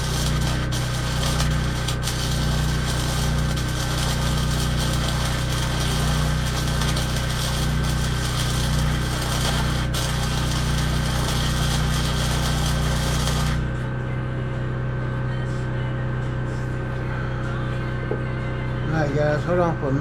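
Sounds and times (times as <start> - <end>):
power tool running: 0.0 - 13.9.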